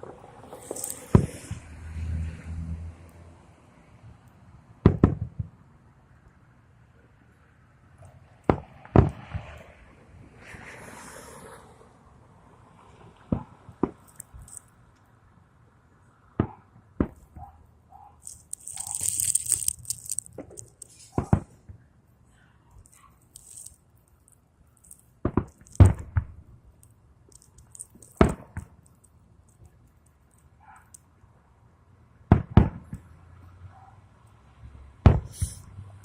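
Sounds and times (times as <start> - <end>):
fireworks hissing crackle: 0.3 - 1.6, 14.1 - 14.6, 18.2 - 21.4, 22.9 - 23.8, 35.3 - 35.6.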